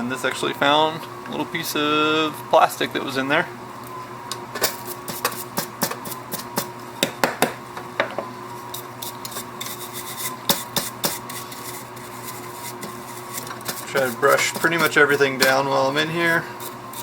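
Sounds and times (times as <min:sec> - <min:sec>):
brush scrubbing mechanism parts: 0:08.7 - 0:17.0.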